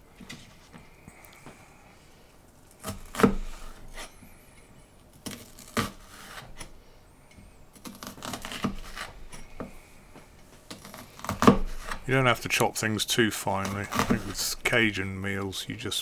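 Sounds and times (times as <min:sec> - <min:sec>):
knife chopping on cutting board: 0:02.8 - 0:04.1, 0:07.8 - 0:09.8, 0:10.7 - 0:12.1, 0:13.6 - 0:14.4.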